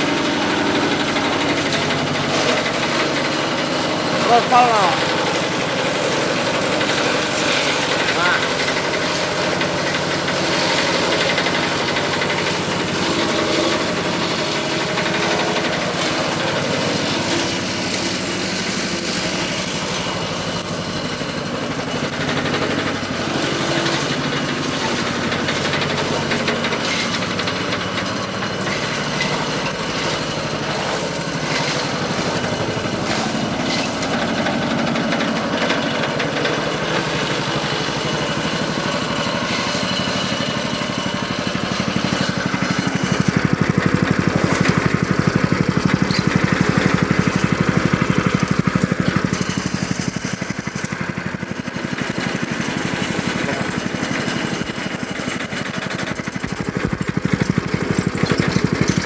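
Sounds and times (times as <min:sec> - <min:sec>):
feed chopper machine running: 0:00.0 - 0:59.0.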